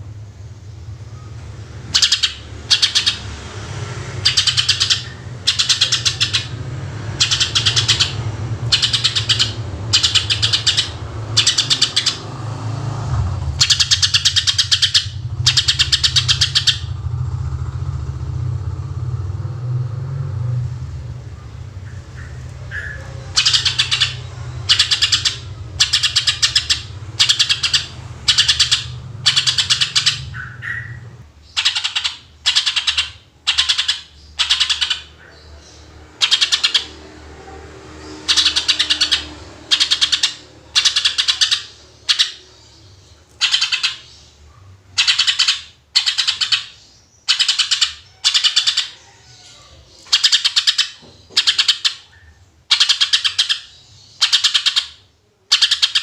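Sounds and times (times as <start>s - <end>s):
bird singing rapid bursts: 0.7s - 19.1s, 21.3s - 56.0s
low rumble: 12.2s - 24.7s.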